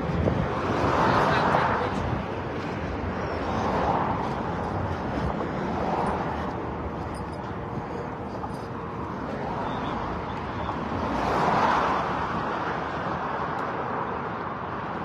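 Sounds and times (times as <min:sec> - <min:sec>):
road traffic: 0:00.0 - 0:15.0
vehicle passing: 0:00.0 - 0:15.0.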